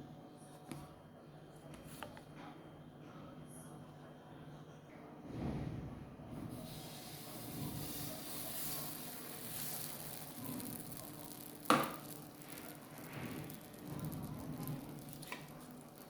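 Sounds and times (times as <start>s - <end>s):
batter sizzling in a pan: 6.5s - 16.0s.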